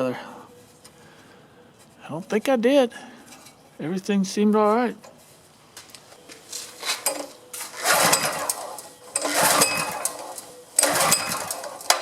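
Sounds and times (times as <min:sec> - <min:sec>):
engine cranking without starting: 0:07.0 - 0:12.0.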